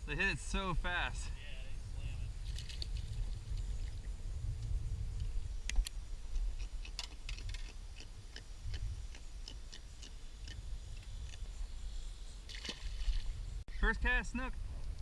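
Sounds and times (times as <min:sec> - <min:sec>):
steady low rumble: 0:00.0 - 0:06.4
sharp ticks and clicks: 0:04.6 - 0:11.5.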